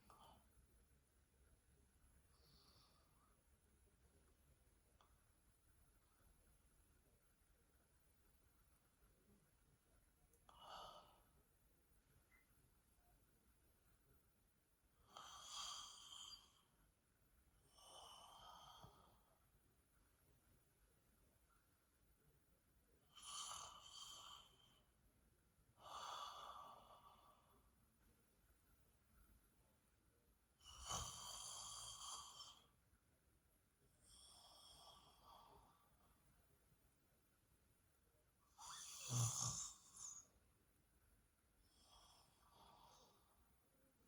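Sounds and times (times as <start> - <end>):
woman breathing softly: 2.2 - 3.5, 38.6 - 40.4
woman snoring softly: 15.0 - 16.7, 17.7 - 19.2, 23.0 - 24.9, 30.6 - 32.8, 34.0 - 36.0, 38.5 - 40.4.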